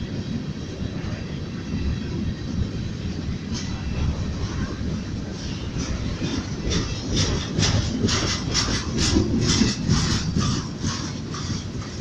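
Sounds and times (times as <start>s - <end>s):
freight train rumbling past: 0.0s - 12.0s
train wheels clacking over rail joints: 2.5s - 12.0s.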